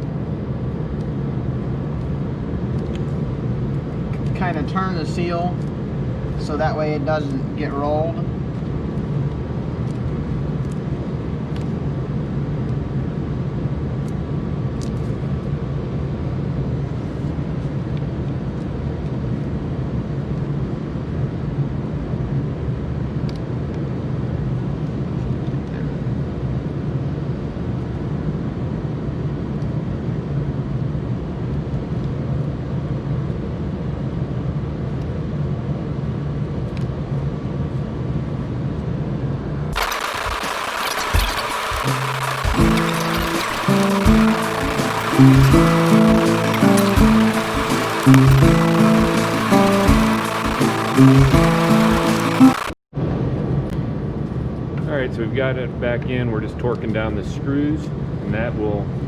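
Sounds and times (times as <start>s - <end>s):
machine drone: 39.7s - 52.8s.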